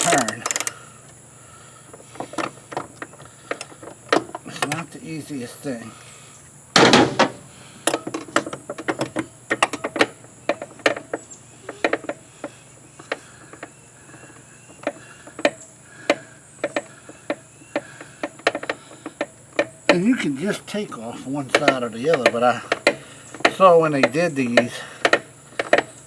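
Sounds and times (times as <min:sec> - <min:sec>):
hand tool clicking on screw: 0:00.0 - 0:00.8.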